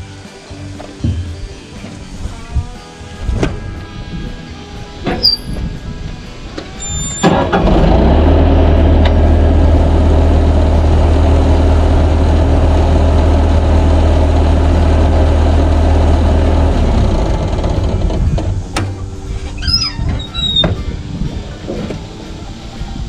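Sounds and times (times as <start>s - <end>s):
diesel engine cranking: 3.2s - 23.0s
diesel engine idling: 5.9s - 19.3s.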